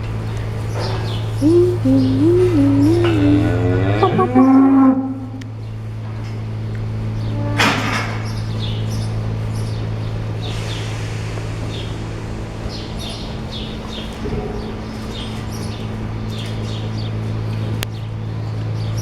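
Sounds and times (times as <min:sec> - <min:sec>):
low electrical hum: 0:00.0 - 0:19.0
small birds chirping: 0:00.3 - 0:05.8, 0:08.2 - 0:11.0
loud hiss: 0:10.3 - 0:14.2.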